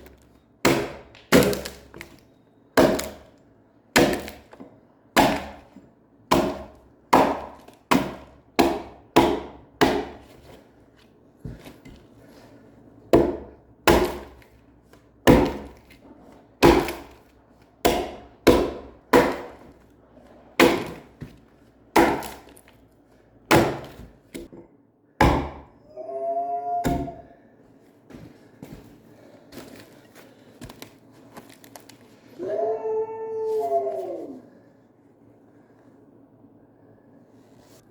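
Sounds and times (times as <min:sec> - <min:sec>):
axe chopping log: 0:00.0 - 0:02.1, 0:02.8 - 0:03.3, 0:04.0 - 0:04.6, 0:05.2 - 0:10.4, 0:13.1 - 0:14.5, 0:15.2 - 0:16.0, 0:16.6 - 0:17.2, 0:17.8 - 0:19.7, 0:20.6 - 0:21.3, 0:21.9 - 0:22.6, 0:23.5 - 0:24.6, 0:25.2 - 0:25.7, 0:26.8 - 0:27.2.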